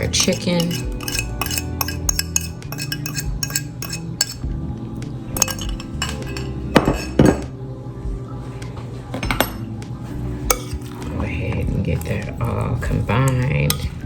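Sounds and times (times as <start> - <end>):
utensil clattering: 0.0 - 4.4, 5.4 - 7.5
utensil clinking against bowl: 0.0 - 4.5, 5.4 - 7.5, 9.2 - 9.6, 10.5 - 11.1, 12.9 - 14.0.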